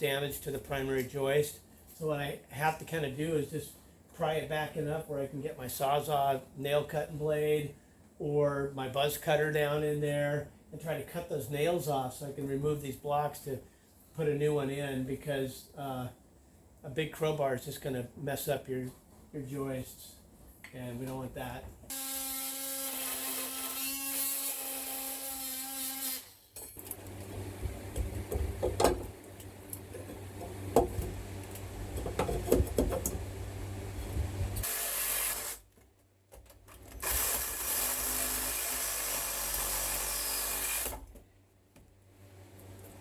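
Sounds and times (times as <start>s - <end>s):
saw scraping and cutting nails: 21.9s - 26.4s
power saw whining: 37.0s - 41.0s.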